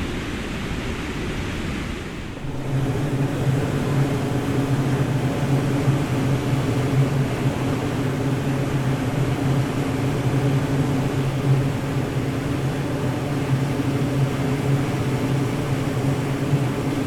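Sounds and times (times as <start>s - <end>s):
water rushing through dam: 0.0s - 17.0s
low droning hum: 2.0s - 17.0s.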